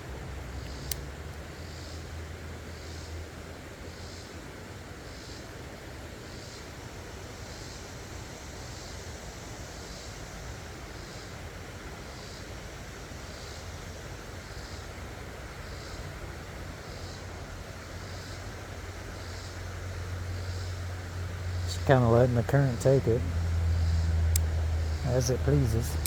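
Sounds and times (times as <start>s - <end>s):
creek water flowing: 9.2s - 26.0s.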